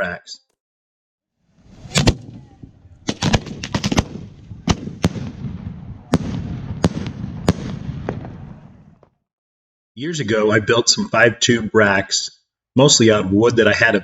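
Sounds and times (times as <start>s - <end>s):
fireworks bangs: 1.6s - 9.1s.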